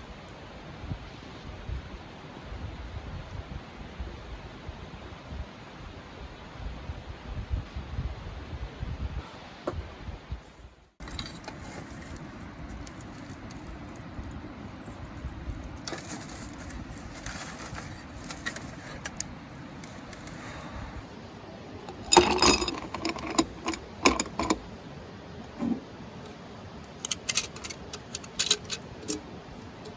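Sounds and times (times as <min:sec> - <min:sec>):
steady background hiss: 0:09.2 - 0:29.9
metal objects clinking: 0:21.9 - 0:24.6, 0:27.0 - 0:29.2.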